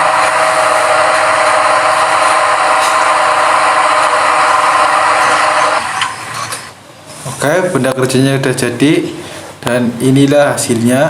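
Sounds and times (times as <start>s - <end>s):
lathe machining hiss: 0.0s - 6.8s
constant machine hum: 0.0s - 7.0s.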